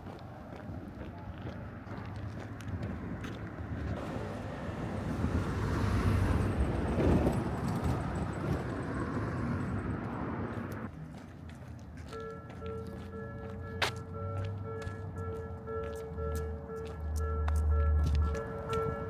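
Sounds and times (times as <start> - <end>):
vehicle passing by: 1.6 - 10.9, 13.2 - 19.0.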